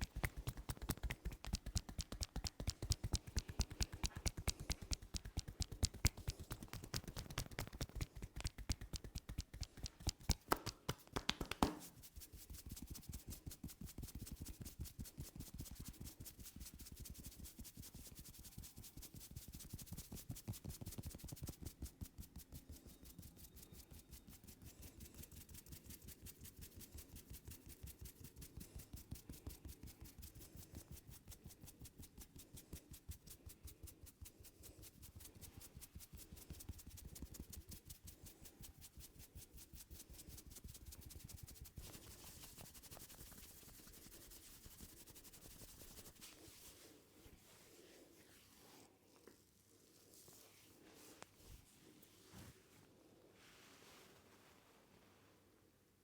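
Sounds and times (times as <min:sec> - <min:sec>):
hands tapping and slapping head: 0:00.0 - 0:16.4
hands rubbing head: 0:00.0 - 0:52.8.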